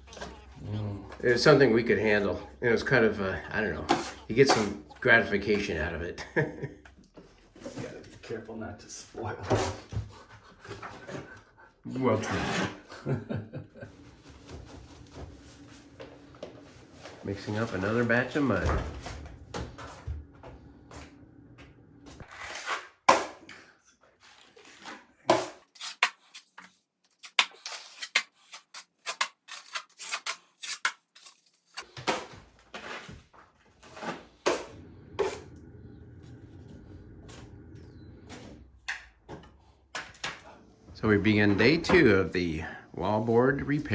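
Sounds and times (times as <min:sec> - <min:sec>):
metal knife scraping container: 0:03.8 - 0:05.1.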